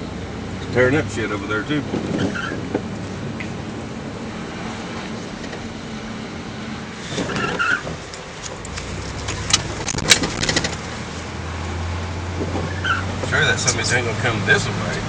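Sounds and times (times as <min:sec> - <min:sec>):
car engine running: 0:00.0 - 0:15.0
sharp clicks and knocks: 0:07.2 - 0:10.8.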